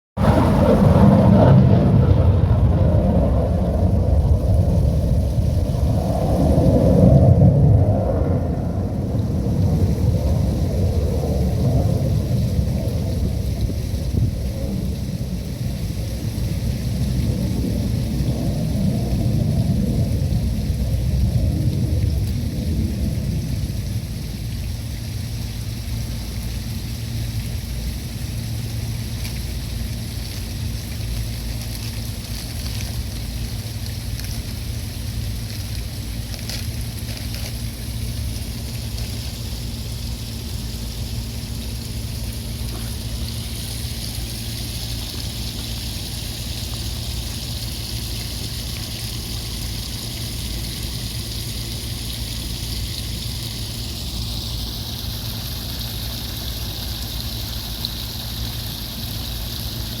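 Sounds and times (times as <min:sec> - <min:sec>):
low rumble and hum: 0:00.1 - 1:00.0
water trickling: 0:00.2 - 1:00.0.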